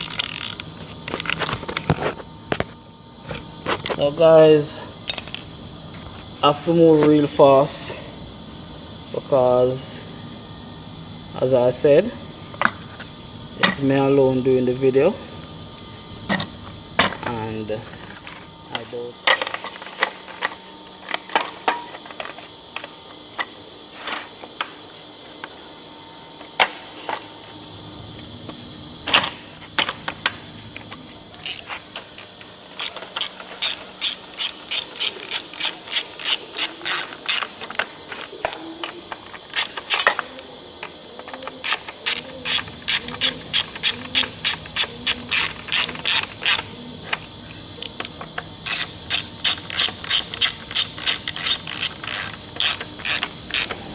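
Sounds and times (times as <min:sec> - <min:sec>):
ratchet wrench clicking: 0:00.0 - 0:01.3, 0:05.1 - 0:05.5, 0:31.4 - 0:37.6, 0:39.5 - 0:40.4, 0:41.6 - 0:46.7, 0:47.8 - 0:53.8
high insect-like drone: 0:00.0 - 0:53.9.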